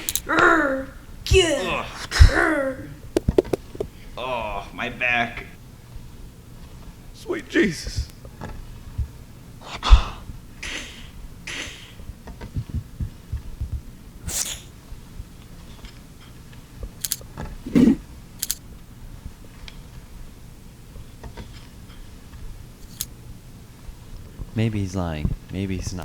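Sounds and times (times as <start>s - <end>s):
heavy thump: 3.2s - 3.9s
breaths and sharp exhalations: 14.3s - 14.7s, 17.7s - 18.1s
short grunt: 17.7s - 18.0s.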